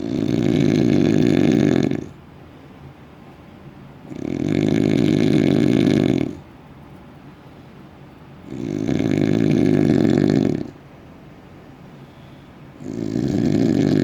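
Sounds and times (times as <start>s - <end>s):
loud rattling snoring: 0.0s - 2.2s, 4.0s - 6.4s, 8.4s - 10.8s, 12.8s - 14.0s.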